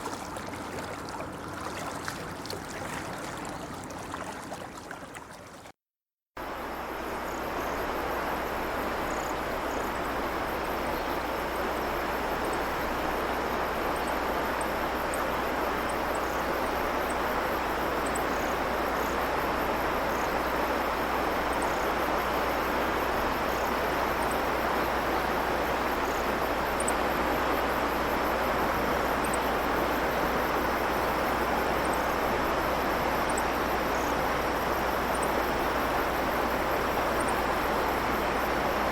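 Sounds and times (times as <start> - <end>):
stream babbling: 0.0 - 5.7, 20.6 - 38.9.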